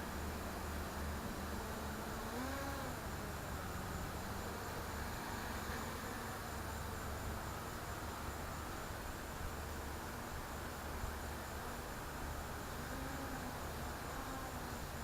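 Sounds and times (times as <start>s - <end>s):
quadcopter motors buzzing whine: 0.1s - 8.8s, 12.6s - 15.0s.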